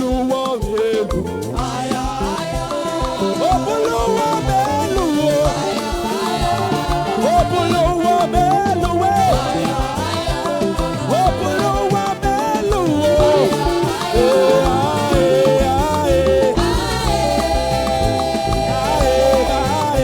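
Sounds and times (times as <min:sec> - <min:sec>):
live praise band music: 0:00.0 - 0:20.0
steady drum beat: 0:00.0 - 0:20.0.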